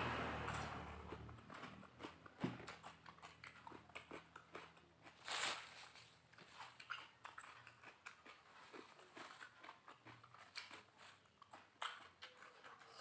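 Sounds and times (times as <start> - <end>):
person chewing: 0.9 - 13.0.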